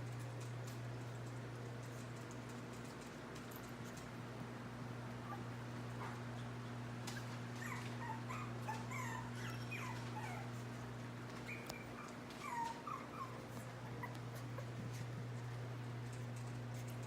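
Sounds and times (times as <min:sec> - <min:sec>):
steady low hum: 0:00.0 - 0:17.0
puppies whimpering: 0:05.2 - 0:15.1.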